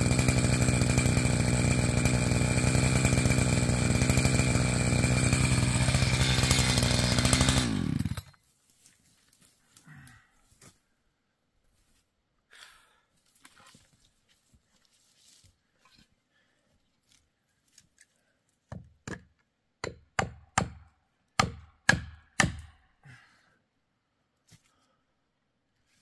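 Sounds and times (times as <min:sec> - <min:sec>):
axe chopping wood: 0:18.7 - 0:22.7.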